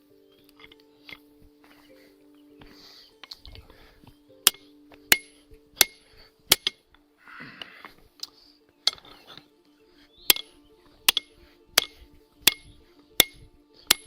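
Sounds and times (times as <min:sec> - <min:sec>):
hammer striking steel on anvil: 0:04.4 - 0:06.9, 0:10.2 - 0:14.0.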